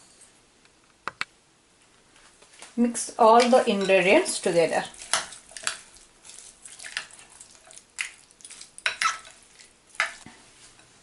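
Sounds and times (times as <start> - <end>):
spoon stirring rice in a bowl: 3.4 - 11.0.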